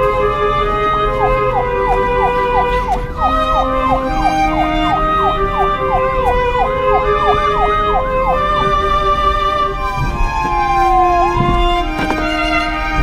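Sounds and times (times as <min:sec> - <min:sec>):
background music with held notes: 0:00.0 - 0:13.0
siren yelping wail: 0:00.0 - 0:13.0.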